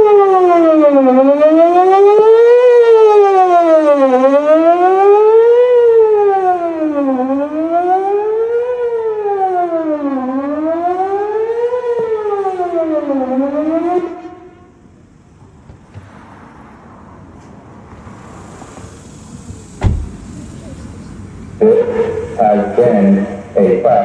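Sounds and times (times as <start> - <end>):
warning siren wailing: 0.0 - 15.0, 21.6 - 24.0.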